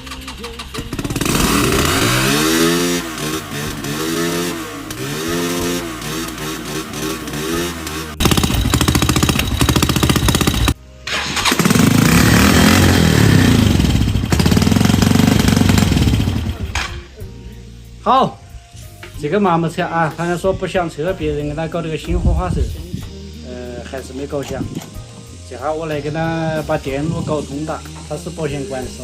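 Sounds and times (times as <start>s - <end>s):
motorcycle engine revving: 0.0s - 17.2s.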